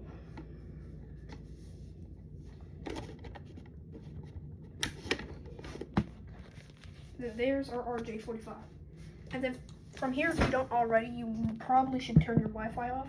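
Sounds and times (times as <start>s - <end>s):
low steady hum: 0.0s - 13.0s
light handling and rustling: 0.4s - 8.2s.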